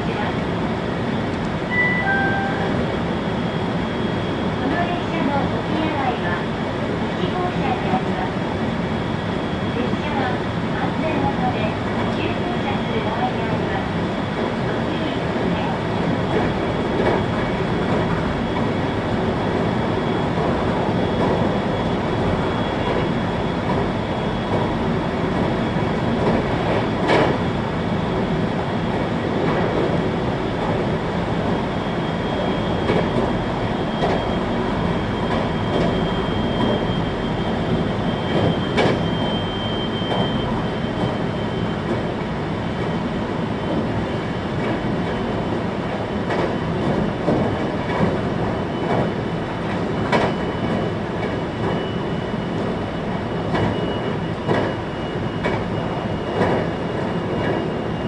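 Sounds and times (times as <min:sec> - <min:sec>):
train wheels rumbling on rail: 0:00.0 - 0:58.0
faint high whine: 0:01.7 - 0:03.3.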